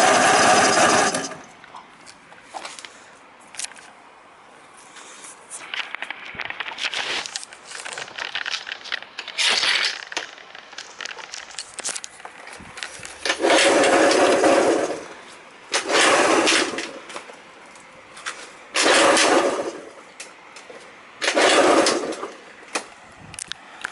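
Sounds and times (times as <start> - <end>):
moped engine starting: 0.0 - 1.5, 13.2 - 17.0, 18.8 - 20.0, 21.2 - 22.4
clattering and scraping: 5.6 - 15.2, 21.2 - 22.4.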